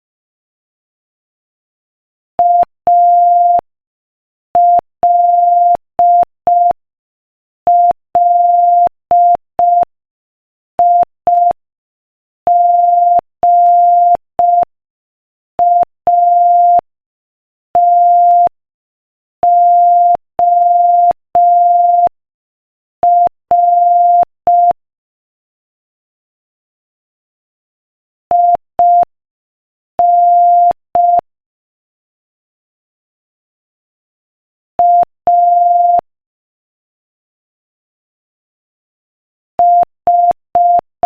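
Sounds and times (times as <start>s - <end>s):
morse code beeps: 12.5s - 14.7s, 15.6s - 16.8s, 17.8s - 18.5s, 19.5s - 22.1s, 23.1s - 24.8s, 28.3s - 29.1s, 30.0s - 31.2s, 34.8s - 36.0s, 39.6s - 40.9s.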